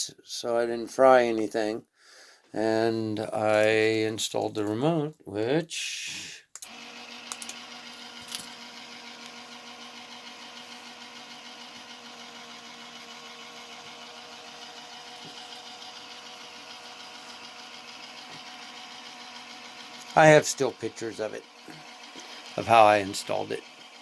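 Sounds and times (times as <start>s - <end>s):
electric motor humming: 6.7s - 24.0s.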